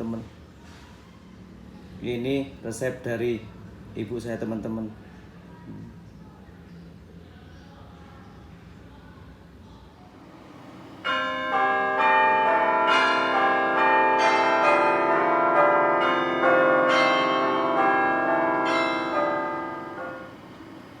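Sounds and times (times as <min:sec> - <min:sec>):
bell chimes ringing: 0:11.0 - 0:20.8.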